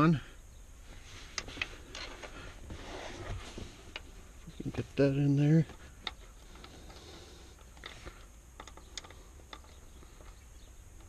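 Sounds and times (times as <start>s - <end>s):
small clicks and taps: 7.6s - 11.0s.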